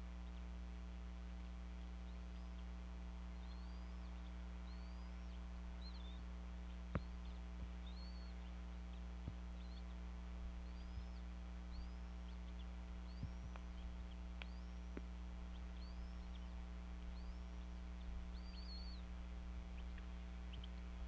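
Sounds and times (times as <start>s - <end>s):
low electrical hum: 0.0s - 21.0s
bird calling: 3.4s - 9.0s, 10.6s - 21.0s.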